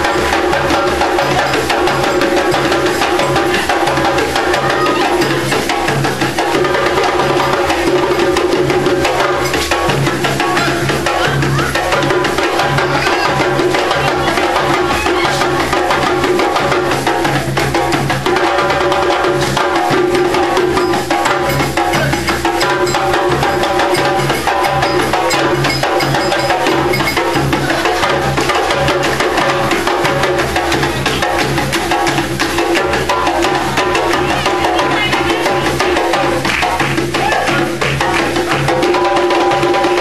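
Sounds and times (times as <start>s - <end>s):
live drums and percussion: 0.0s - 40.0s.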